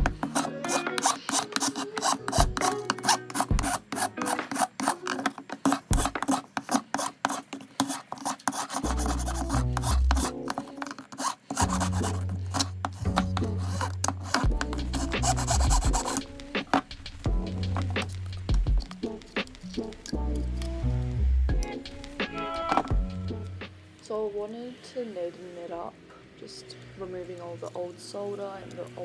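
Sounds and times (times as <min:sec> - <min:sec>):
hand file rasping on metal: 0:00.0 - 0:19.0.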